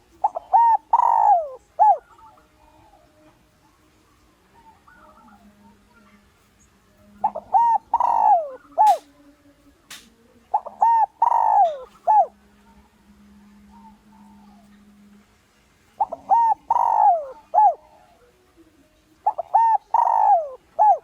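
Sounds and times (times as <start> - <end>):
dove cooing: 0.0 - 6.2, 7.0 - 9.2, 10.4 - 15.1, 15.9 - 18.5, 19.2 - 21.0
sharp clicks: 8.8 - 9.1, 9.9 - 10.1.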